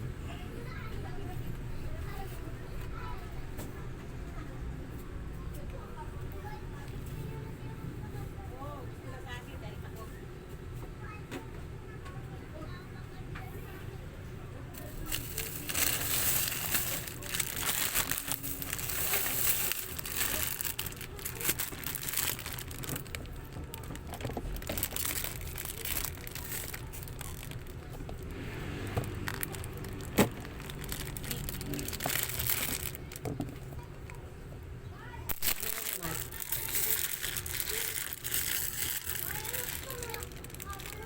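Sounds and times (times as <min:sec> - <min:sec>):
packaging crinkling: 0:14.8 - 0:28.3, 0:29.0 - 0:33.4, 0:35.3 - 0:41.0.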